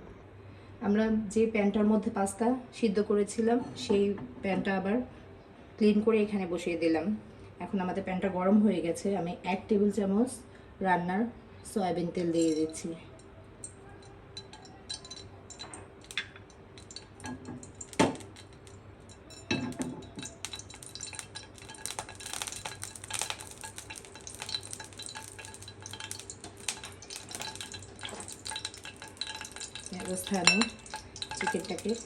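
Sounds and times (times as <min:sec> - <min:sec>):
utensils clinking on a pan: 0:12.3 - 0:32.0
oil crackling in a frying pan: 0:12.4 - 0:32.0.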